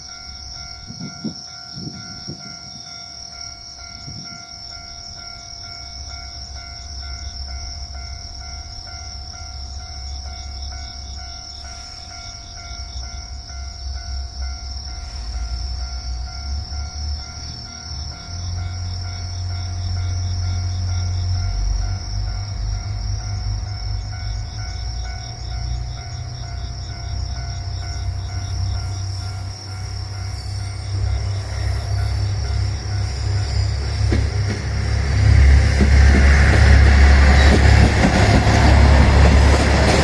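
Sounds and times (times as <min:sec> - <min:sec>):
diesel railcar engine rumble: 0:00.0 - 0:40.0.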